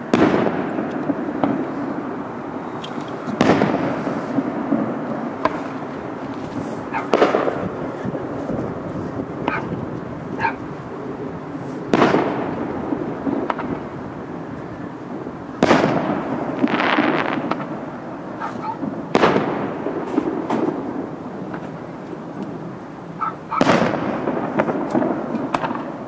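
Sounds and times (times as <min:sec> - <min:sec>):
firework shells booming: 0:00.0 - 0:11.2, 0:11.8 - 0:26.0
firework crackling: 0:00.0 - 0:26.0
firework pops: 0:02.7 - 0:08.6, 0:11.8 - 0:12.6, 0:13.3 - 0:13.9, 0:15.6 - 0:17.8, 0:18.4 - 0:22.6, 0:23.5 - 0:26.0.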